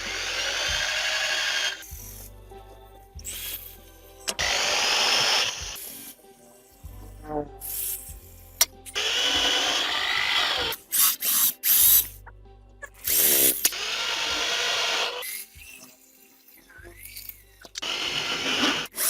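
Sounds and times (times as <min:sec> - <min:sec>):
handheld power tool running: 0:00.0 - 0:01.8, 0:04.3 - 0:05.8, 0:08.9 - 0:12.0, 0:13.0 - 0:15.8, 0:17.7 - 0:19.0.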